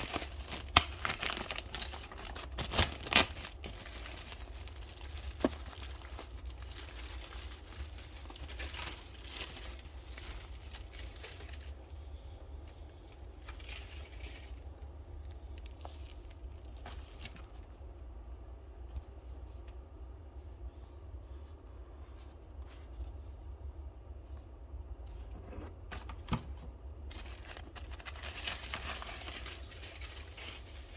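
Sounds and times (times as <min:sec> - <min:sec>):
packaging torn and crinkled: 0:00.0 - 0:11.9, 0:27.1 - 0:30.9
low steady hum: 0:00.0 - 0:30.9.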